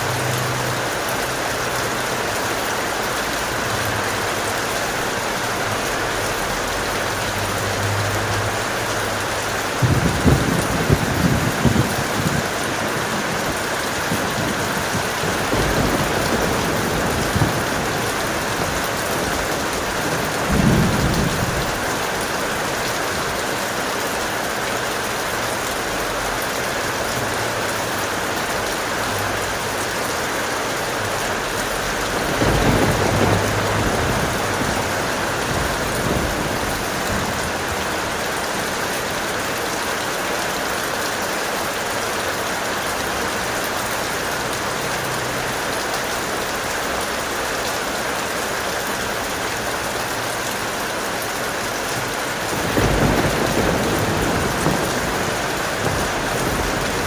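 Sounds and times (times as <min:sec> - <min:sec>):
strong rain falling: 0:00.0 - 0:57.0
thunder rumbling: 0:08.4 - 0:23.2, 0:31.0 - 0:39.3, 0:52.4 - 0:57.0.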